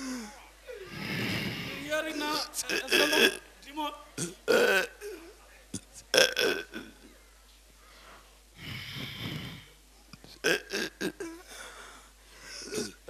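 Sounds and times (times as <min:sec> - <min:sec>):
person breathing heavily: 0:00.0 - 0:02.0, 0:07.8 - 0:09.8, 0:11.4 - 0:12.8.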